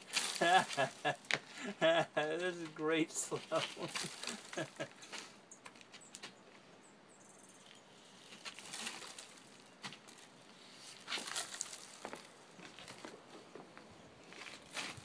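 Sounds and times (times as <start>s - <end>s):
birdseed pattering on ground: 3.6s - 6.4s, 7.6s - 10.3s, 11.0s - 13.2s.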